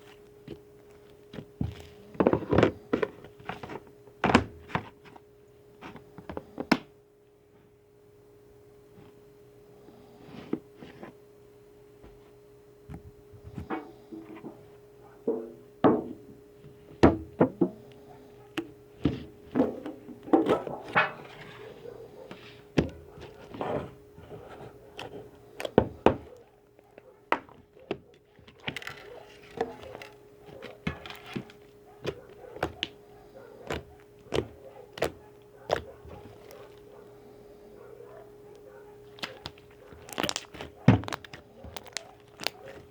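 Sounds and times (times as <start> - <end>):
faint steady hum: 0.0 - 42.9
slime clicking and popping: 39.2 - 42.8.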